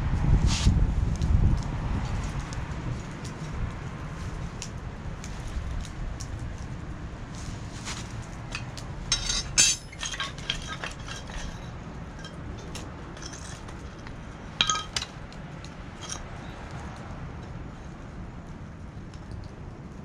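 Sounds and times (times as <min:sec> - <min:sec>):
light metal taps: 0:08.5 - 0:15.2
metal parts clinking and clattering: 0:08.5 - 0:15.2, 0:16.0 - 0:16.2.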